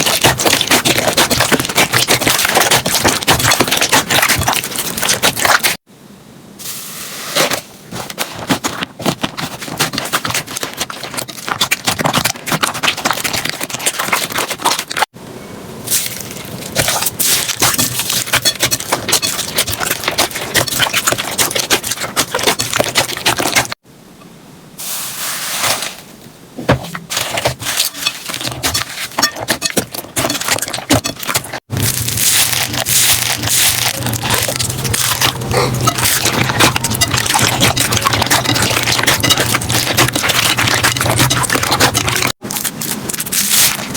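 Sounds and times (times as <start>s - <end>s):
slime crackling and popping: 31.6s - 43.9s.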